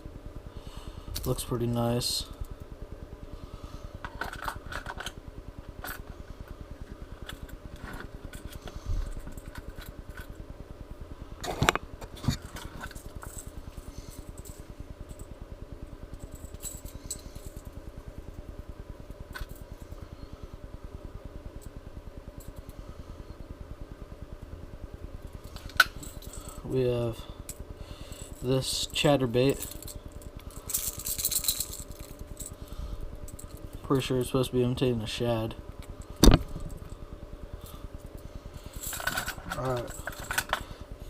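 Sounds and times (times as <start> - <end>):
steady low hum: 0.0 - 41.0
lures and hooks rattling: 38.7 - 40.6.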